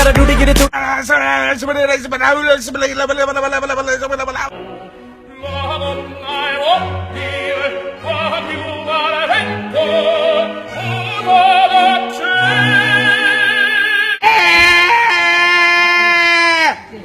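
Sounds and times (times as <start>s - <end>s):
operatic singing: 0.0s - 0.7s, 4.5s - 14.6s
orchestral accompaniment: 4.5s - 14.2s.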